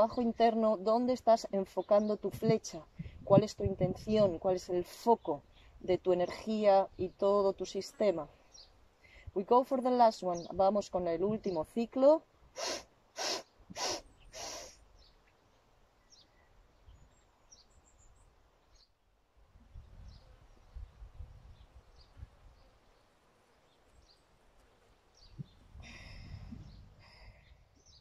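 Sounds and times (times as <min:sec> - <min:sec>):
person exhaling: 0:25.8 - 0:27.5.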